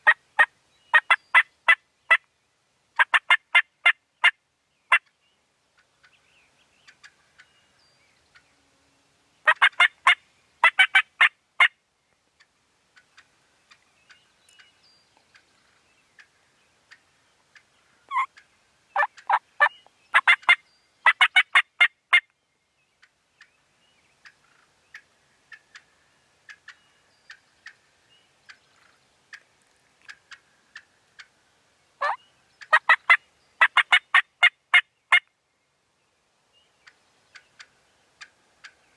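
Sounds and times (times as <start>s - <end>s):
wild turkey calling: 0.0s - 2.3s, 3.0s - 8.6s, 9.4s - 35.3s, 36.6s - 38.9s
small birds chirping: 0.0s - 38.9s.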